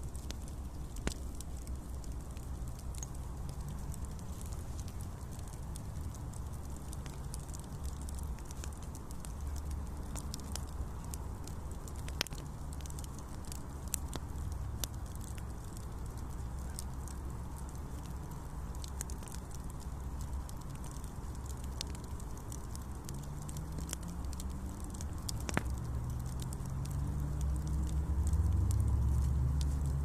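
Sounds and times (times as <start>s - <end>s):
campfire crackling and popping: 0.0s - 30.0s.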